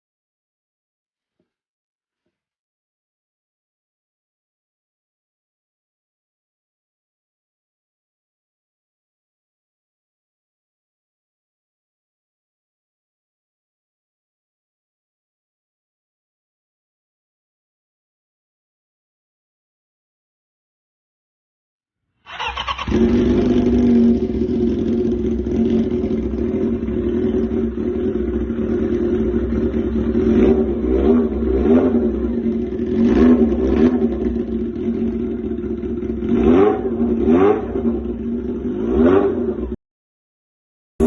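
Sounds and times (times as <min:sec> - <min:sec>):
motorcycle engine idling: 0:22.3 - 0:36.3
motorcycle throttle blips: 0:22.3 - 0:39.8.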